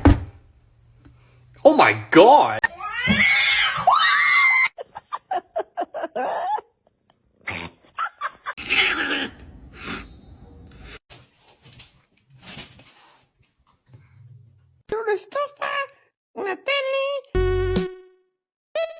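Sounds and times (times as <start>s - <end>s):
cat yowling: 2.6s - 4.7s.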